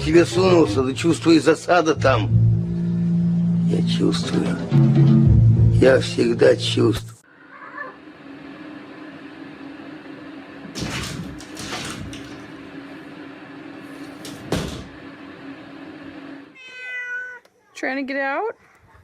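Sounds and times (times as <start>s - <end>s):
steady low hum: 0.0s - 16.5s
door rattling: 10.8s - 12.7s, 14.0s - 15.0s.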